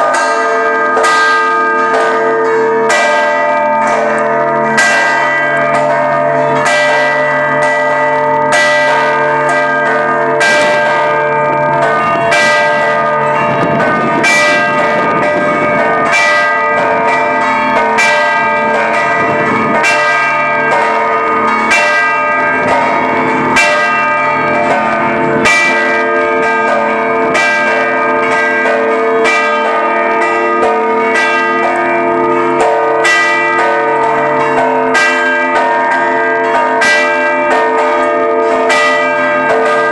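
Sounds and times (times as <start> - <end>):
church bells pealing: 0.0 - 39.9.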